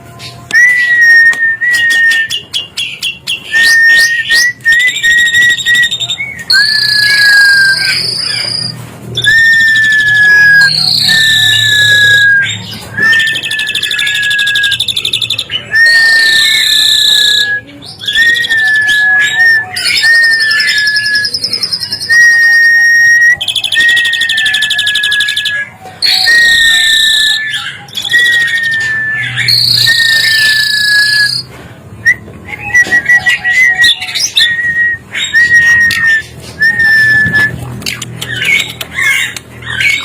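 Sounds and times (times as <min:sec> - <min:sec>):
starling whistled notes: 0:03.4 - 0:31.5
harsh raspy bird chatter: 0:37.6 - 0:40.0.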